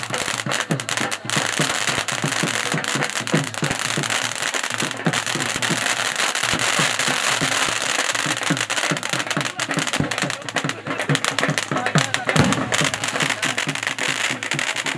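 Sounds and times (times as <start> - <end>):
fireworks cracks and pops: 0.0 - 14.9
music: 0.0 - 14.9
deep firework thumps: 8.2 - 14.9.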